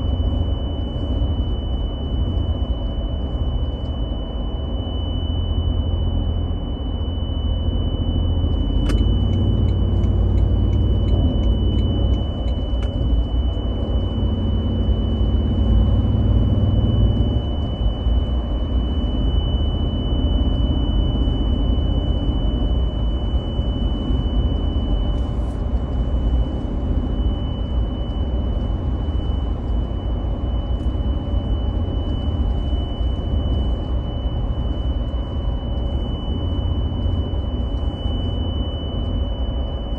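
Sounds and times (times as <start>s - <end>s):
road and engine rumble: 0.0s - 39.9s.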